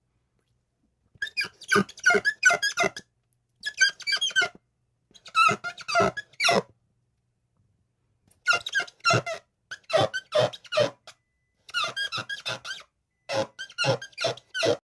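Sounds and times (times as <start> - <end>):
glass squeaking as wiped: 1.2 - 3.0, 3.6 - 4.6, 5.2 - 6.7, 8.5 - 14.8.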